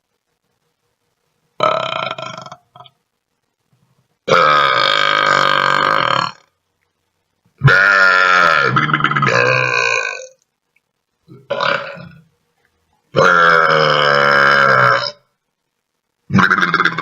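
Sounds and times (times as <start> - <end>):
man burping: 1.6 - 2.9, 4.3 - 6.5, 7.6 - 10.4, 11.3 - 12.2, 13.2 - 15.2, 16.3 - 17.0.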